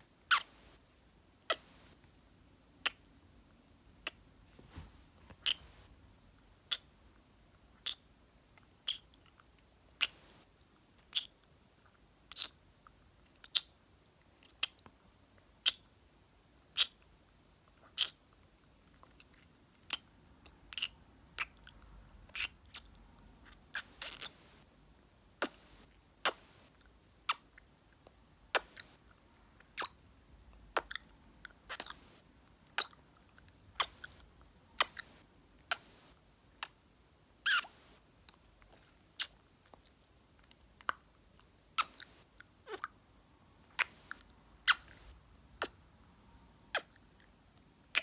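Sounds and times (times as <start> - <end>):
lip smacks and kisses: 6.7 - 6.9, 8.8 - 9.0, 11.1 - 11.3, 12.3 - 12.6, 16.8 - 17.0, 17.9 - 18.2, 25.4 - 26.6, 33.8 - 34.2, 34.8 - 36.0, 41.8 - 42.1, 43.8 - 45.8, 46.7 - 47.0.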